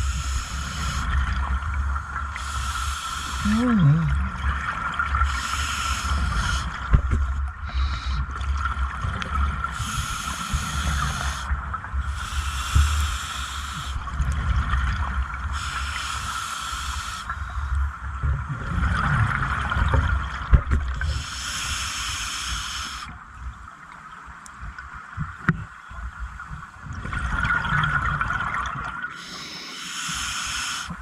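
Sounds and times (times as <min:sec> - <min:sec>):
scuba regulator exhalations bubbling: 0:02.4 - 0:08.2.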